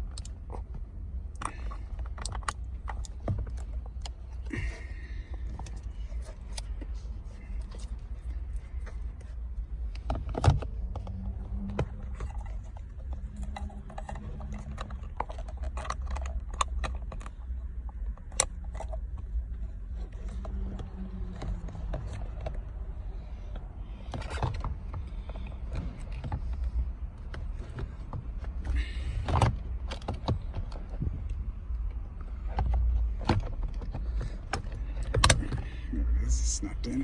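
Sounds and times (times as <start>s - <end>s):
plastic clicks and rattles: 7.6s - 22.9s.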